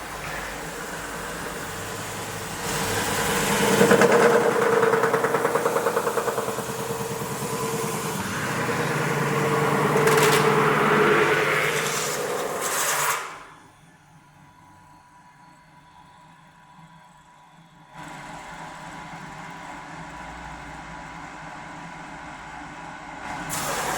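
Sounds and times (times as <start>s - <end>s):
metal spinning machine humming: 0.0s - 13.6s
scraping hiss: 10.4s - 13.6s.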